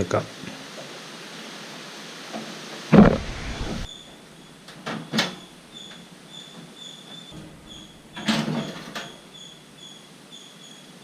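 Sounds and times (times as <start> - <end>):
metal cover scraping clatter: 7.3 - 9.2.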